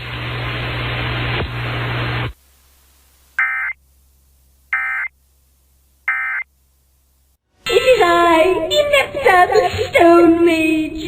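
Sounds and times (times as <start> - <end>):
digital data tone bursts: 3.4 - 3.8, 4.7 - 5.1.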